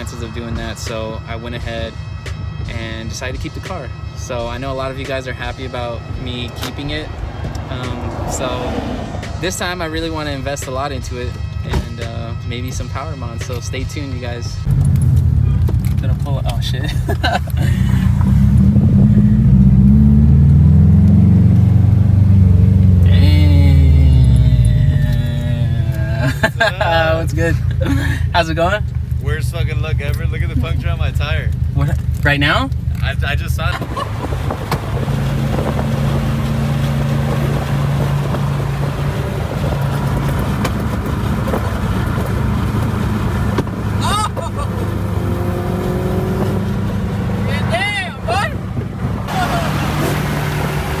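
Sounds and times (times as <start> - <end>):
car engine and exhaust droning: 0.0 - 51.0
road noise: 0.0 - 51.0
higher steady tone: 21.4 - 31.2.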